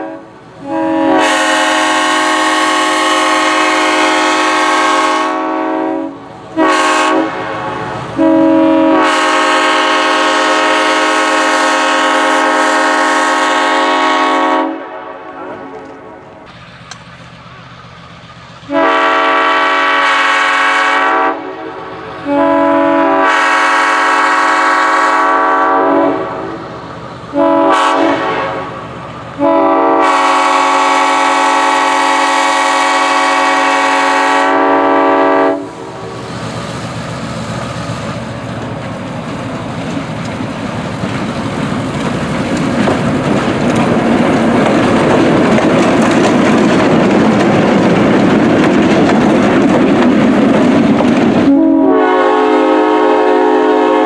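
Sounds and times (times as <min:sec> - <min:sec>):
train air horn blasts: 0:00.0 - 0:16.5, 0:18.6 - 0:26.6, 0:27.3 - 0:36.3, 0:51.4 - 0:54.0
train rolling on rails: 0:00.0 - 0:54.0.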